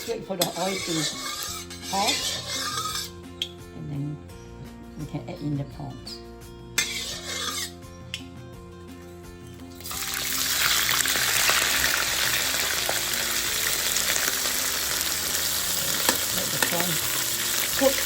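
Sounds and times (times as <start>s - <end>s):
background music: 0.0s - 18.0s
prawns sizzling in hot oil: 0.6s - 3.1s, 6.8s - 7.7s, 9.7s - 18.0s.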